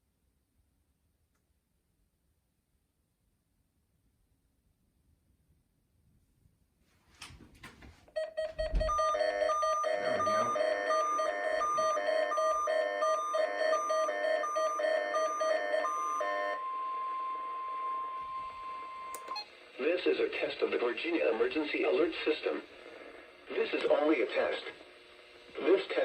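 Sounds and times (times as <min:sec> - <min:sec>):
steady alarm tone: 0:08.2 - 0:19.2
two-tone beeping alarm: 0:08.2 - 0:19.4.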